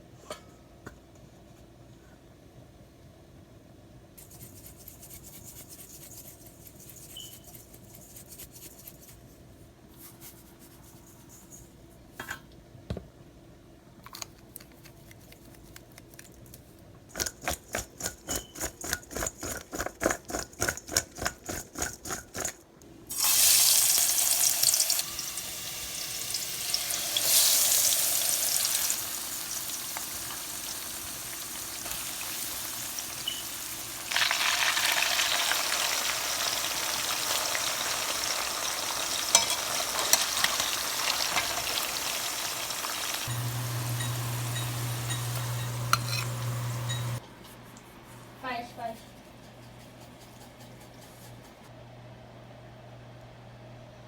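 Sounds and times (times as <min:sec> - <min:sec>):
stirring strokes: 0:04.2 - 0:11.8, 0:43.2 - 0:51.7
fries sizzling in hot oil: 0:23.1 - 0:47.2.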